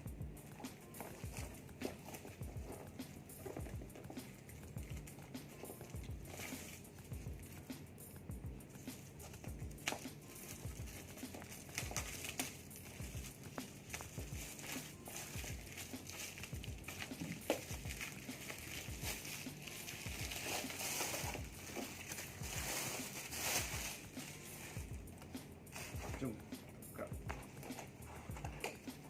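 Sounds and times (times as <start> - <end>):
plastic wrap crinkling: 8.7 - 24.9.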